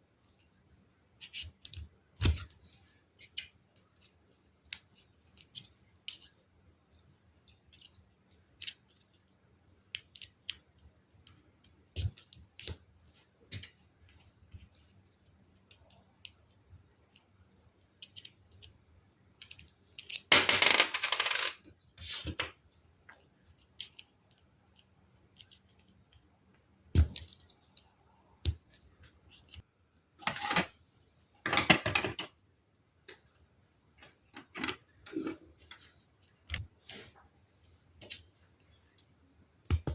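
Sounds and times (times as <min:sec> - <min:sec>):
plastic pieces clicking and clattering: 0:19.4 - 0:22.5.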